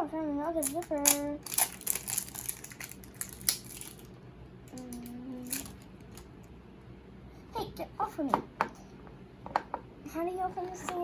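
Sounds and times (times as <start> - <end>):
plastic packaging crinkling: 0.6 - 4.1.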